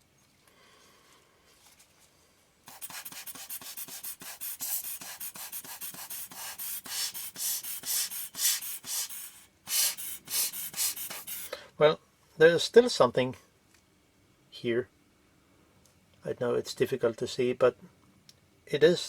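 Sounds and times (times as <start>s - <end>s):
scratchy hand rubbing: 2.7s - 11.5s.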